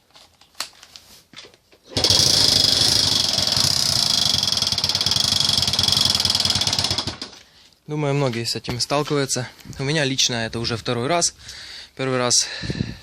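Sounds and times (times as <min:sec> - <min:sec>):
moped engine knocking clatter: 0:02.0 - 0:07.3.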